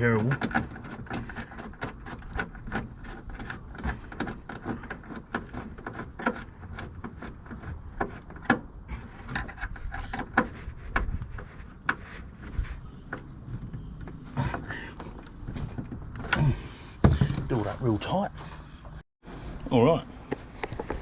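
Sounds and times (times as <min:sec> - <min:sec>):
nut and bolt clicking and tapping: 0:00.0 - 0:12.2.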